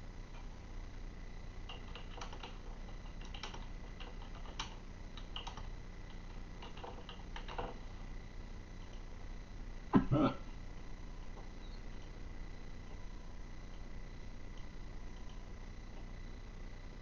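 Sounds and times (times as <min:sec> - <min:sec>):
faint steady high tone: 0:11.5 - 0:12.0.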